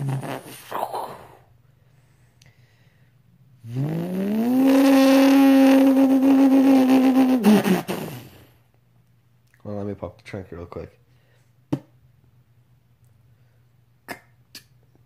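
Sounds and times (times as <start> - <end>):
man imitating car engine: 3.6 - 8.4.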